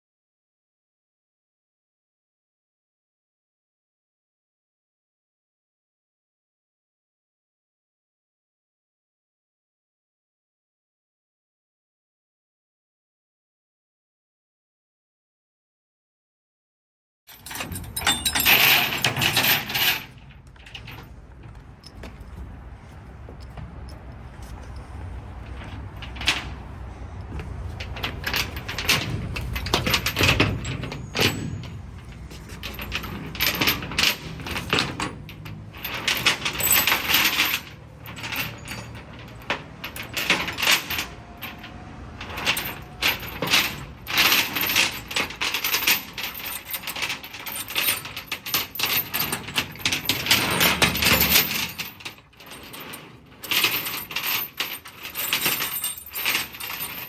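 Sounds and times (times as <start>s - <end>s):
low engine rumble: 17.4s - 44.2s.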